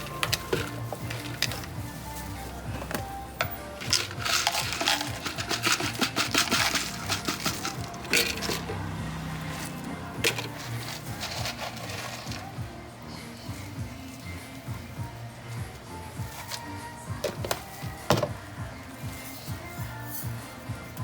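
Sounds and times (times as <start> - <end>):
metal utensils clinking: 0.0 - 12.5
background music: 0.0 - 21.0.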